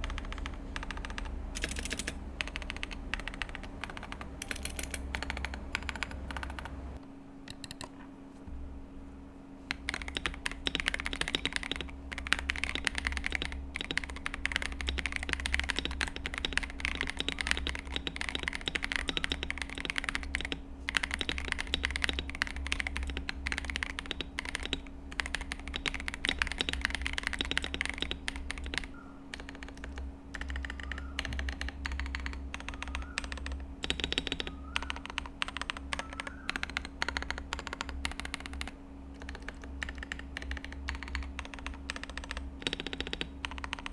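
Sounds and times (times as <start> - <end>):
mechanical keyboard key clacks: 0.0 - 6.7, 7.5 - 7.9, 9.7 - 43.9
long keys pressed: 9.7 - 43.9.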